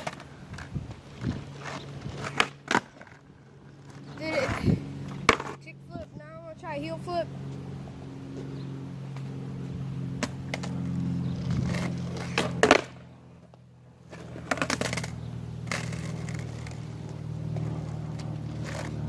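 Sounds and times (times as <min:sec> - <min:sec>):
skateboard wheels rolling on pavement: 0:00.0 - 0:19.0
skateboard landing clatter: 0:05.2 - 0:05.6, 0:12.2 - 0:13.0
skateboard tail popping: 0:05.2 - 0:05.6, 0:11.7 - 0:13.0, 0:14.1 - 0:16.8.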